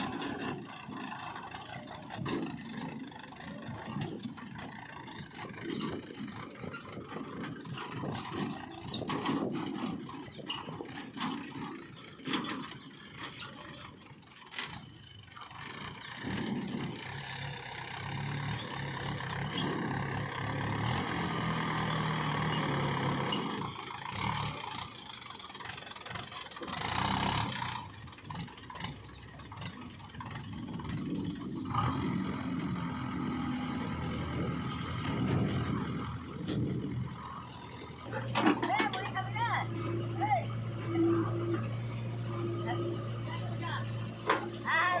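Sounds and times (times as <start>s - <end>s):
diesel engine running: 0.0s - 45.0s
clanks and knocks: 3.7s - 14.9s, 36.4s - 40.0s, 44.1s - 44.7s.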